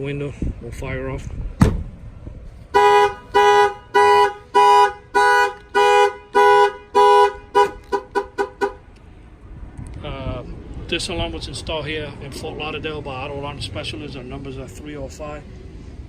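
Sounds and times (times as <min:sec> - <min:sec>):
two-note car horn honking: 0:02.7 - 0:08.8.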